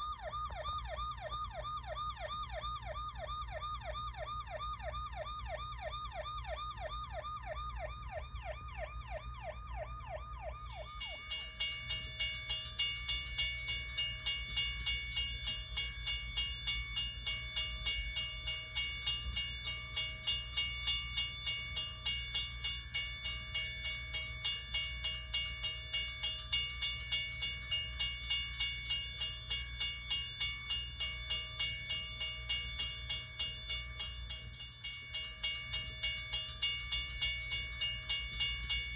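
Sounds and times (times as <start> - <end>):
siren yelping: 0.0 - 24.7
metallic bell ringing: 10.7 - 38.9.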